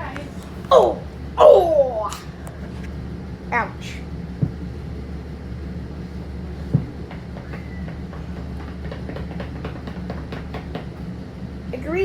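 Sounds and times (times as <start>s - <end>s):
railway cars rumbling: 0.0s - 12.0s
sharp knocks: 4.4s - 4.6s, 6.6s - 11.1s.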